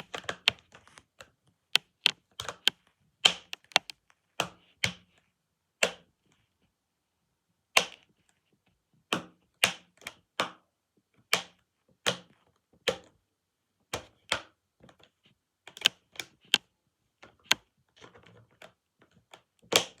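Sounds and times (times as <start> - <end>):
keyboard key clicks: 3.3 - 3.9.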